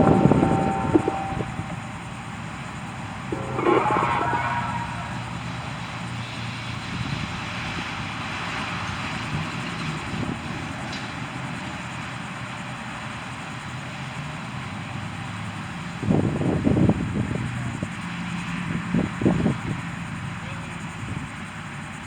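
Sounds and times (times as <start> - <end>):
loud abrupt sound: 0.0 - 2.0, 3.3 - 5.8.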